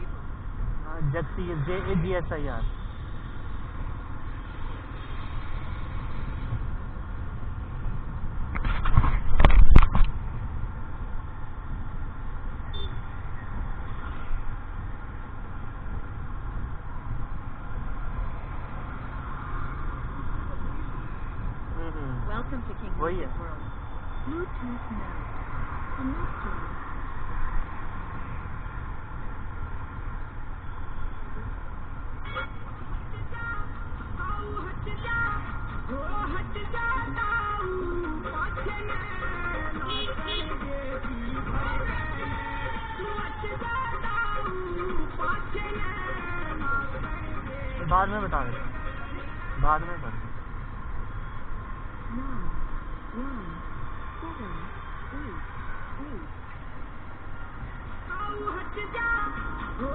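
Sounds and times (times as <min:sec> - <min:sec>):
street traffic rumble: 0:00.0 - 0:59.9.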